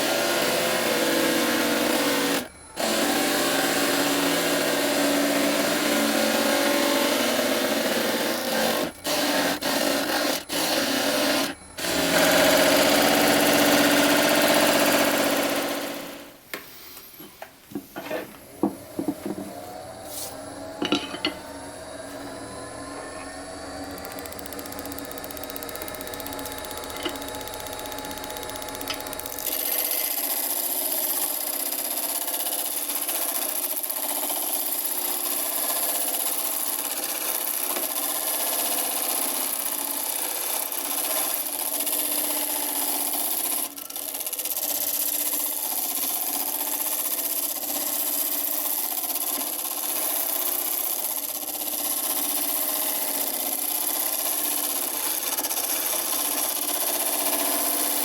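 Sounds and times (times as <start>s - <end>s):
lathe humming: 0.2s - 16.2s, 18.0s - 32.3s.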